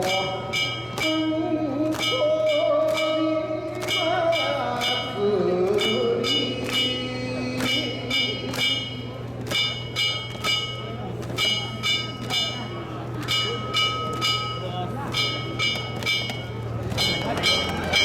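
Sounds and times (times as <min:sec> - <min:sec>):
person singing long sliding notes: 0:00.0 - 0:09.0
small gongs clanging: 0:00.0 - 0:18.0.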